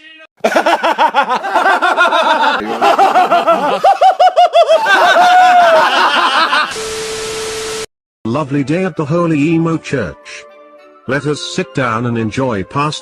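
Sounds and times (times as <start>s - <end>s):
high-pitched laughing: 0.4s - 6.8s.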